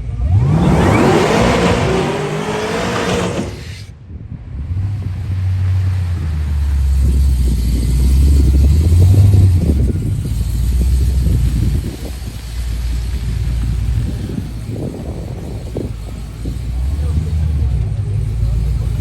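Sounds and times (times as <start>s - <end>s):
car engine at full throttle: 0.0s - 3.9s, 6.4s - 19.0s.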